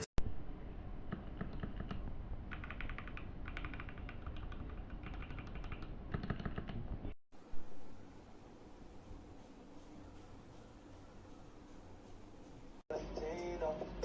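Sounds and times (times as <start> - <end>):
mechanical keyboard typing: 1.1 - 7.0.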